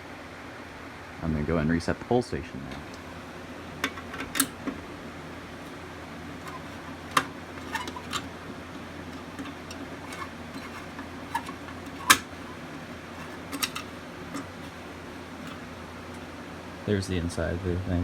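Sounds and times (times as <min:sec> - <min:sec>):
steady low hum: 0:00.0 - 0:18.0
pull station clicks and knocks: 0:03.7 - 0:04.9, 0:05.7 - 0:08.4, 0:09.1 - 0:15.6.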